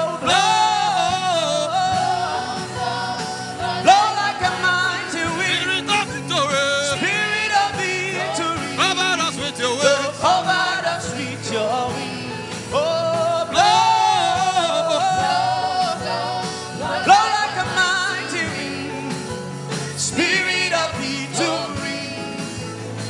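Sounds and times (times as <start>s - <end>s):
person singing gospel: 0.0s - 23.0s
soft instrumental backing with beat: 0.0s - 23.0s.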